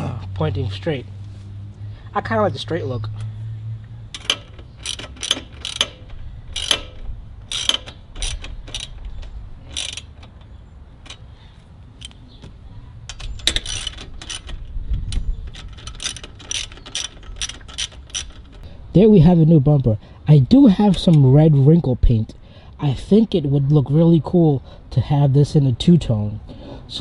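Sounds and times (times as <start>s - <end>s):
socket ratchet clicking: 4.1s - 11.3s, 13.1s - 18.7s.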